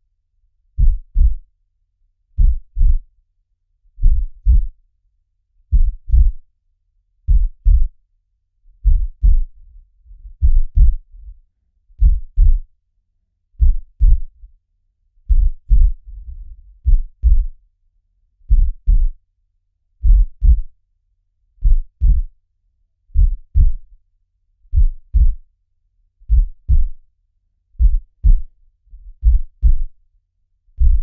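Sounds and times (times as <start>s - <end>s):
heartbeat: 0.8s - 1.5s, 2.4s - 3.1s, 4.0s - 4.8s, 5.7s - 6.5s, 7.3s - 8.0s, 8.8s - 11.4s, 12.0s - 12.7s, 13.6s - 14.5s, 15.3s - 17.6s, 18.4s - 19.2s, 20.0s - 20.8s, 21.6s - 22.4s, 23.2s - 24.0s, 24.7s - 25.5s, 26.2s - 27.0s, 27.8s - 30.0s, 30.8s - 31.0s.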